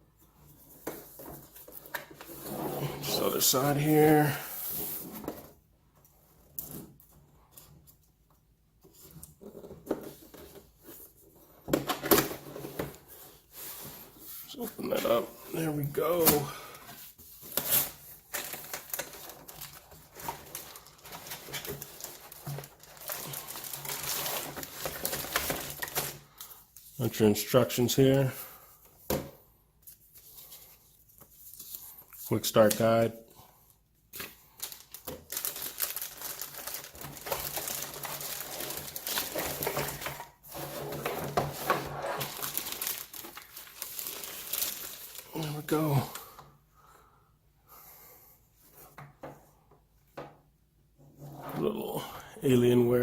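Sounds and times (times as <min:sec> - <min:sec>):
packaging crinkling and rustling: 0:17.2 - 0:27.2, 0:34.2 - 0:46.2.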